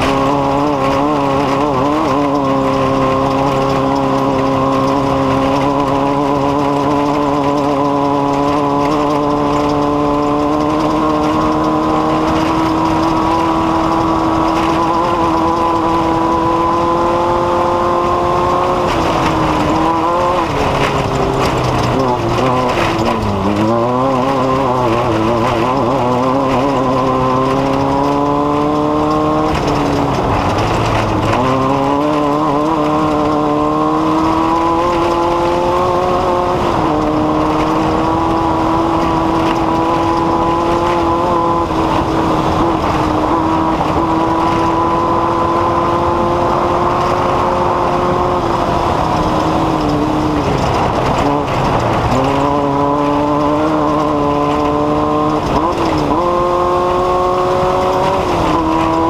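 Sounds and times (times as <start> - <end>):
engine running at speed: 0.0 - 59.0.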